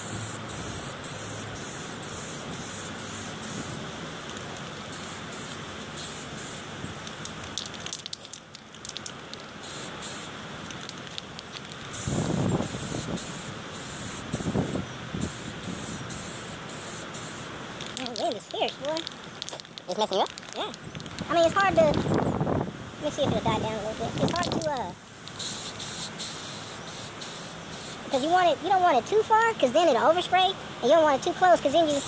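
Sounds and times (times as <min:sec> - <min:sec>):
aerosol spray can hissing: 0:00.0 - 0:08.4, 0:09.0 - 0:19.7, 0:25.3 - 0:28.3
wind buffeting microphone: 0:11.9 - 0:16.2, 0:20.7 - 0:24.9.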